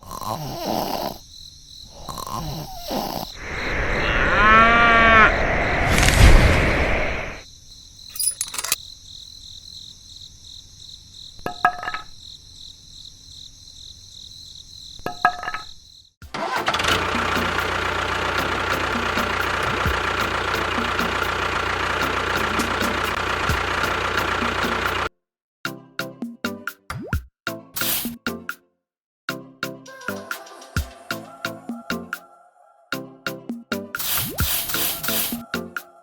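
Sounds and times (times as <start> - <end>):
short pitched sounds: 3.4 - 7.4
steady high whine: 3.4 - 7.4
engine low rumble: 16.6 - 25.1.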